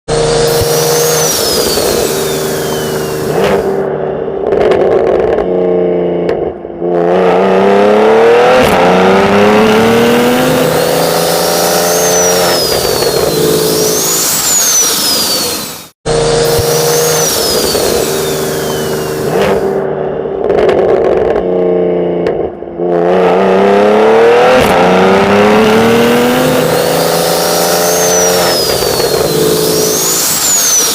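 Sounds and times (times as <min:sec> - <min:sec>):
turbo whistle: 0:00.1 - 0:03.7, 0:10.2 - 0:19.7, 0:25.8 - 0:30.9
car engine accelerating hard: 0:00.1 - 0:30.9.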